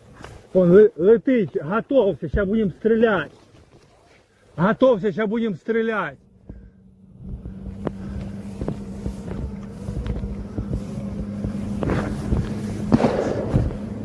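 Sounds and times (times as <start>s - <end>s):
drone motors buzzing: 6.2s - 14.0s
wind on microphone: 6.5s - 14.0s
handling knocks: 7.3s - 14.0s.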